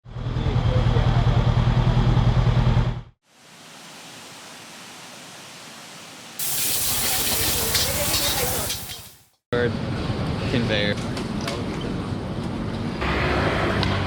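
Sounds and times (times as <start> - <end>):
faint steady hiss: 3.3 - 9.3.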